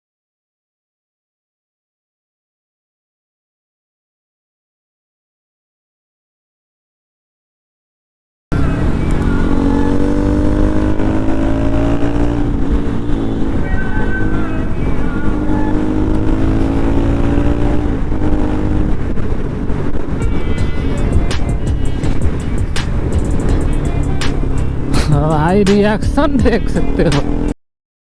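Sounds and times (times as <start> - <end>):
motorcycle engine revving: 8.5 - 27.6.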